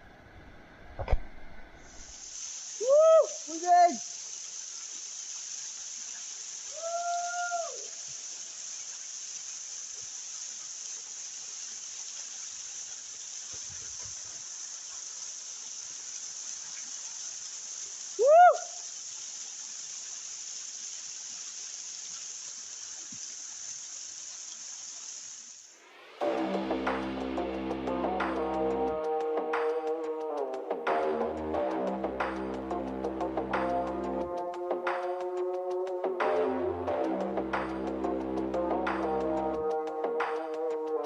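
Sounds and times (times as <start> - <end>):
insects chirping chorus: 2.0 - 25.8
music: 25.9 - 41.0.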